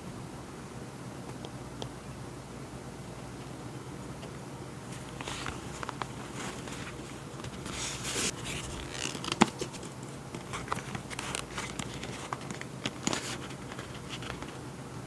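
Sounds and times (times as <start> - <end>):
paper rustling and crinkling: 4.8 - 14.7.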